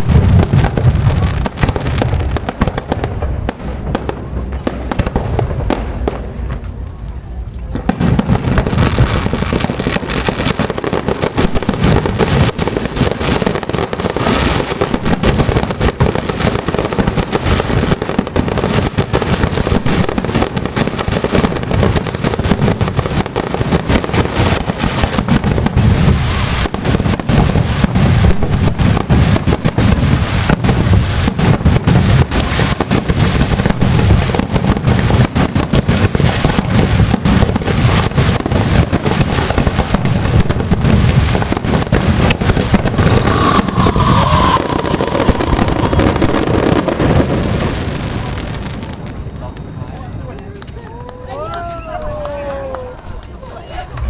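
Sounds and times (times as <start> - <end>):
fireworks shell bursts and crackling: 14.2 - 49.2.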